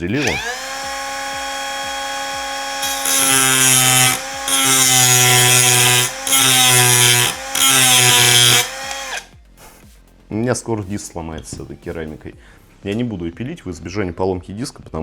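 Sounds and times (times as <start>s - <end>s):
angle grinder motor whine: 0.0s - 9.4s
harsh grinding rasp on ceramic: 0.0s - 9.8s.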